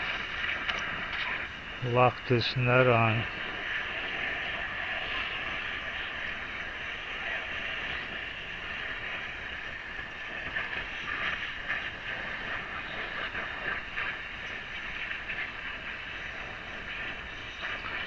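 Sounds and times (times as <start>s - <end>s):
torch flame hissing: 0.0s - 18.0s.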